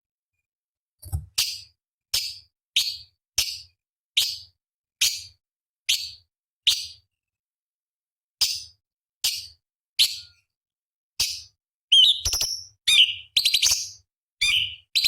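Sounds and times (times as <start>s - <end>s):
bird harsh rasping calls: 11.9s - 15.0s.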